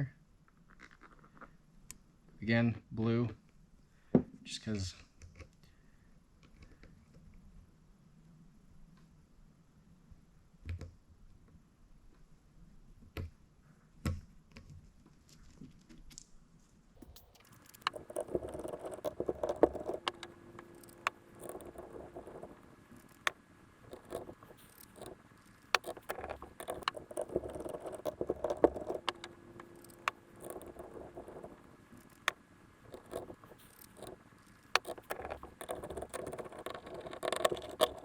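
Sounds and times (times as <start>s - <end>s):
sharp metal clicks: 17.0s - 38.0s.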